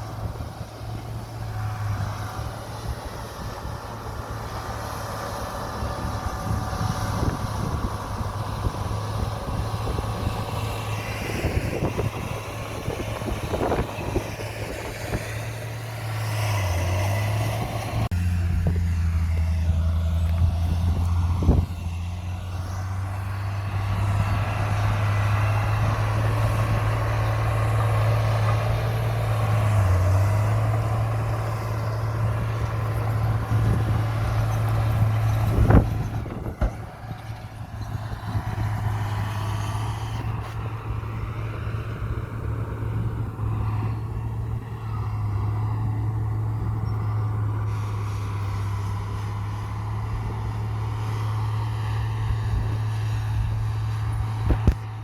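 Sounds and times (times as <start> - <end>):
bulldozer diesel engine running: 0.0 - 55.0.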